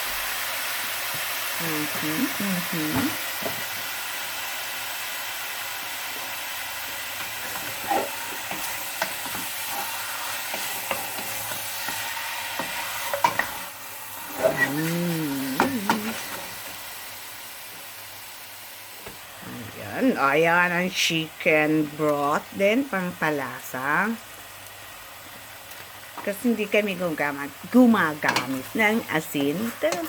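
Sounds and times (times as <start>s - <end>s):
chicken sizzling in a pan: 0.0s - 30.0s
utensil scraping a pan: 7.2s - 14.9s.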